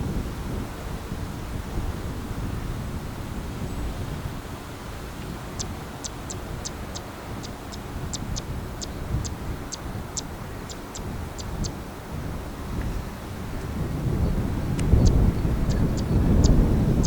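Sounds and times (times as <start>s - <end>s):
wind rumbling on microphone: 0.0s - 17.0s
bird giving high ticking calls: 5.5s - 11.8s, 14.7s - 16.6s.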